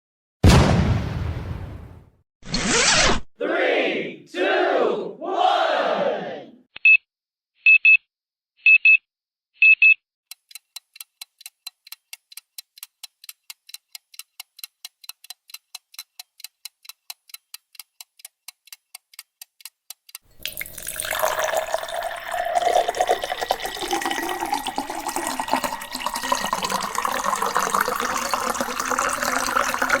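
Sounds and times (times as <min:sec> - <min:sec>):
rapid even ticking: 0:10.3 - 0:20.2
running water from a tap: 0:20.3 - 0:30.0.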